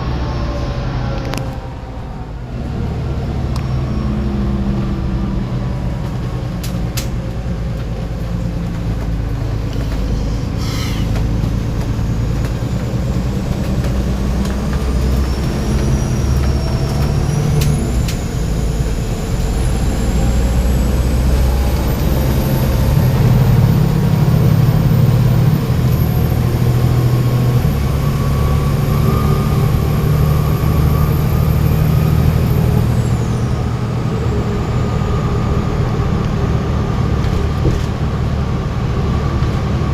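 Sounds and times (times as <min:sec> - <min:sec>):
bus diesel engine running: 0:00.0 - 0:39.9
high turbo whistle: 0:10.2 - 0:11.2.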